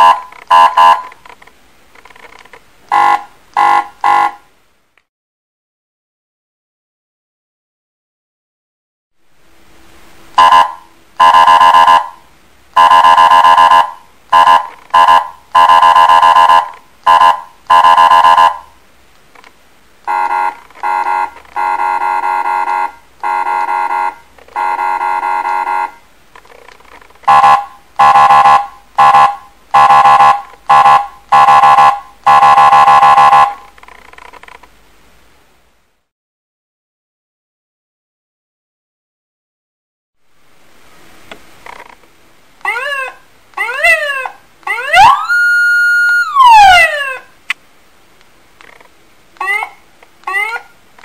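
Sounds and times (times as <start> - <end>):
electronic siren horn blasts: 0.0 - 1.1, 2.9 - 4.4, 10.4 - 12.2, 12.8 - 18.7, 20.1 - 26.0, 27.3 - 33.7.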